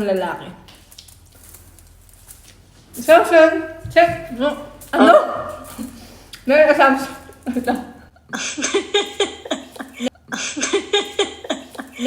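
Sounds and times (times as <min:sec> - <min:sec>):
woman speaking choppy syllables: 0:00.0 - 0:00.6, 0:03.0 - 0:05.7, 0:06.4 - 0:07.9.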